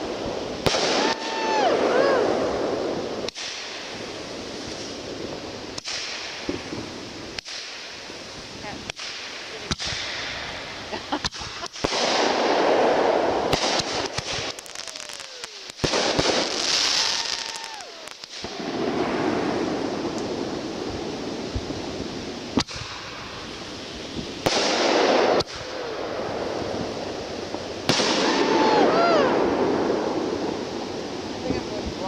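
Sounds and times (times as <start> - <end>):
fireworks bangs: 0.0 - 32.0
fireworks hissing: 0.0 - 32.0
falling whistles: 14.4 - 18.8.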